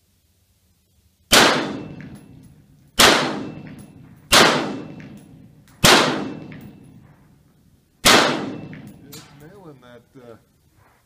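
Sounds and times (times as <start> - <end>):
gunshots with echoing tail: 1.3 - 7.2, 8.0 - 9.4.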